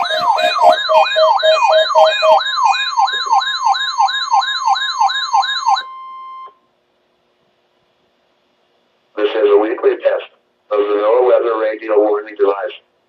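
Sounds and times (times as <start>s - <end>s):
pulsing tone: 0.0s - 3.8s
steady alert tone: 0.0s - 6.0s
electronic siren alarm sweeping down: 0.0s - 6.5s.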